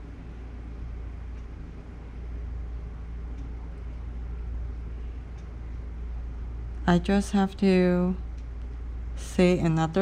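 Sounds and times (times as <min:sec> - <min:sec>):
low background rumble: 0:00.0 - 0:10.0
faint light ticks: 0:01.3 - 0:01.6, 0:03.3 - 0:03.6, 0:05.3 - 0:05.8, 0:08.3 - 0:08.8.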